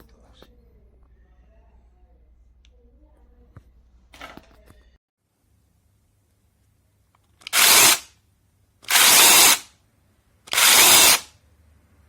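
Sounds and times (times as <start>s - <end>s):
mini chainsaw motor running: 7.4s - 8.1s, 8.9s - 9.7s, 10.5s - 11.3s.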